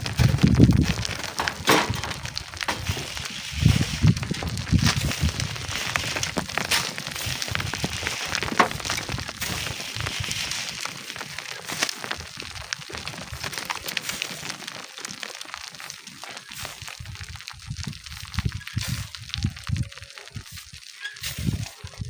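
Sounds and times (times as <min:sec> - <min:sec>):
wind on microphone: 0:00.0 - 0:06.6, 0:16.7 - 0:22.0
sand and stones crackling: 0:00.0 - 0:22.0.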